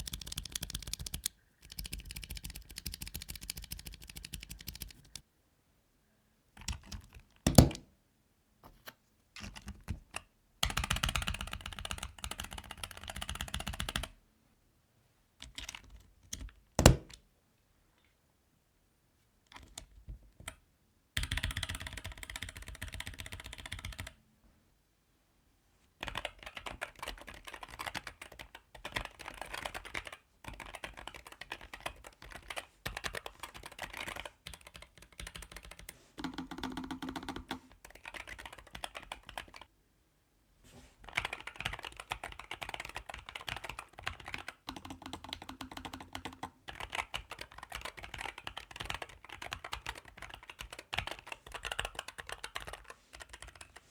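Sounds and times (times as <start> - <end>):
mechanical keyboard typing: 0.0 - 5.2, 6.6 - 7.8, 9.4 - 14.1, 15.4 - 17.2, 21.2 - 24.2, 26.0 - 39.7, 41.1 - 53.8.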